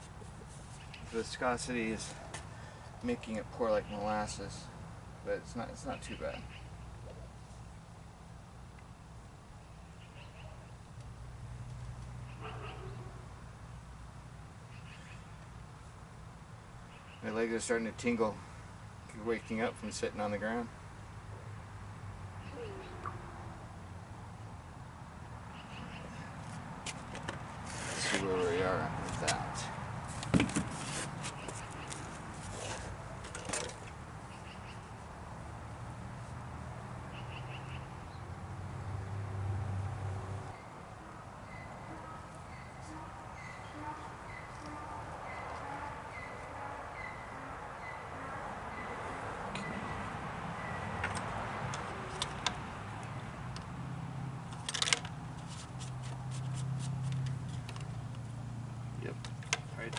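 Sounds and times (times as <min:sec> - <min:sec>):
faint bird chirps: 0:22.4 - 0:23.3, 0:41.4 - 0:50.9.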